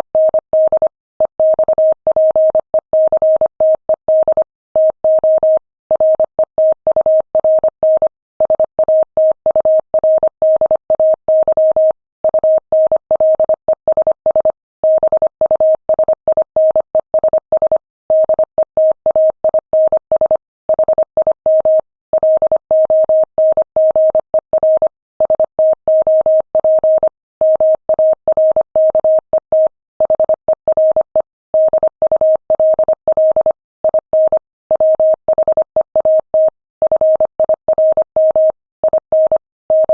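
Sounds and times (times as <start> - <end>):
morse code tone: 26.0 - 39.9.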